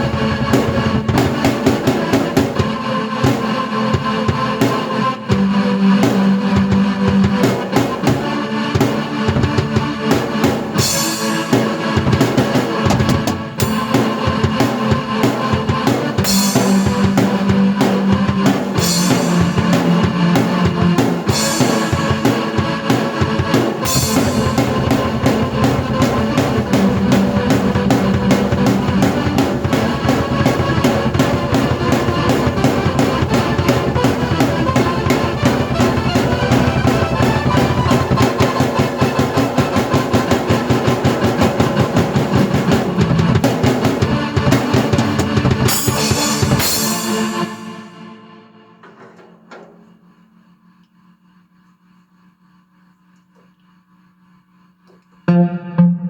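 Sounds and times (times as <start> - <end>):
drum beat: 0.0 - 47.8, 48.8 - 50.1
sustained keyboard notes: 0.0 - 50.3, 55.3 - 56.0
cymbal crashes: 10.8 - 50.2.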